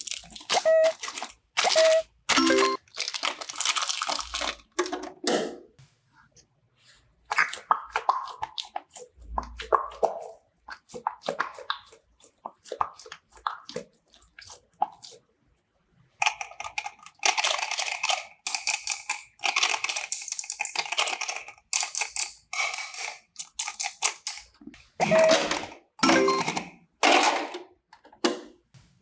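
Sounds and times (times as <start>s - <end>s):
slime squishing: 0.0s - 4.8s, 6.8s - 24.7s.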